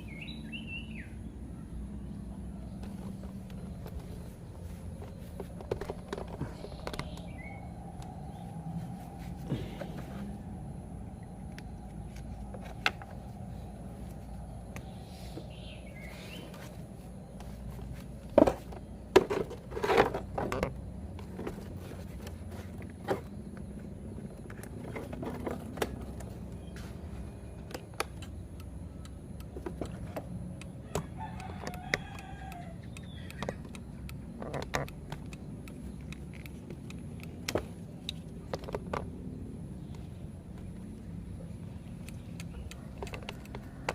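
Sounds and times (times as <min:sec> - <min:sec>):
sharp short clicks and knocks: 0:27.6 - 0:39.1
rooster crowing: 0:30.8 - 0:33.0, 0:42.8 - 0:43.9.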